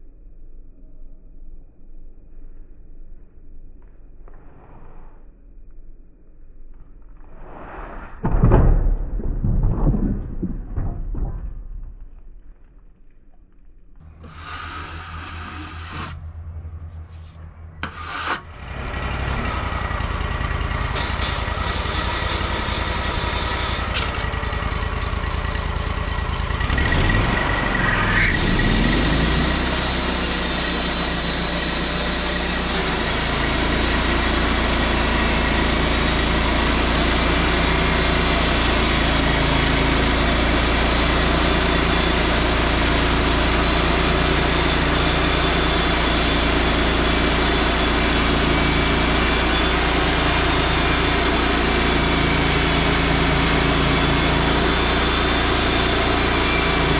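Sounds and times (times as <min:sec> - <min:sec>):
band blade sawing through log: 0:14.0 - 0:16.2, 0:16.9 - 0:18.8, 0:26.8 - 0:56.9
sawmill engine humming: 0:14.0 - 0:56.9.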